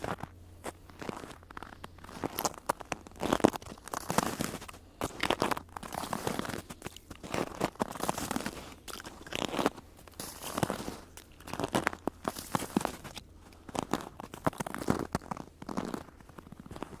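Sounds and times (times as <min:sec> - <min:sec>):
footsteps crunching in snow: 0:00.0 - 0:17.0.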